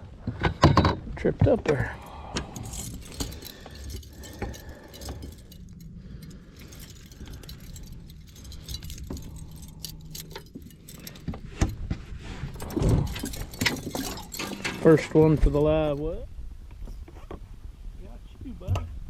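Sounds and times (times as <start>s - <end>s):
fishing gear clinking and rattling: 1.6s - 16.3s
steady low hum: 1.8s - 16.6s.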